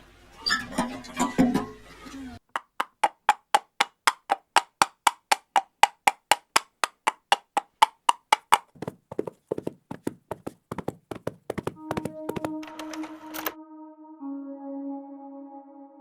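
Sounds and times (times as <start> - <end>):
sharp hollow knocks: 2.6 - 12.5.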